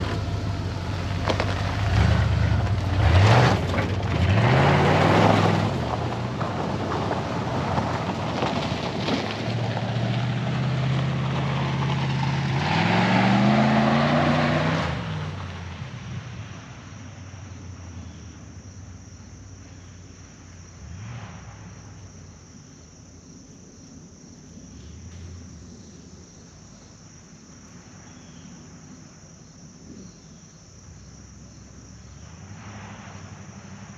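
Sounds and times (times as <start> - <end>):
pickup engine revving: 0.0 - 7.1, 9.8 - 15.5
insect chirring: 17.2 - 33.9.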